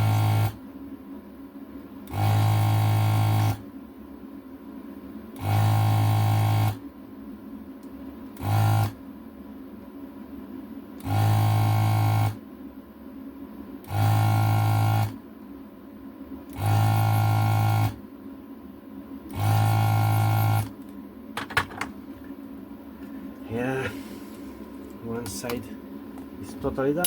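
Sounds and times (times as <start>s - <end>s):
desoldering vacuum pump buzzing: 0.0s - 0.7s, 1.8s - 3.7s, 5.3s - 6.9s, 7.8s - 9.0s, 10.8s - 12.4s, 13.8s - 15.2s, 16.3s - 18.1s, 19.1s - 27.0s.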